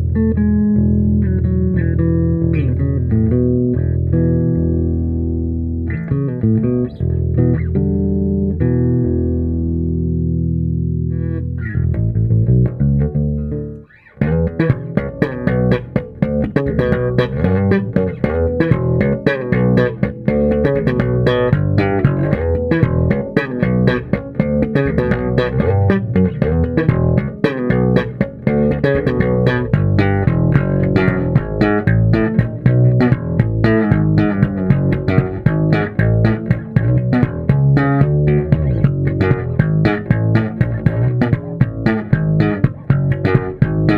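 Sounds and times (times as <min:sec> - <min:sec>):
electric bass playing: 0:00.0 - 0:43.9.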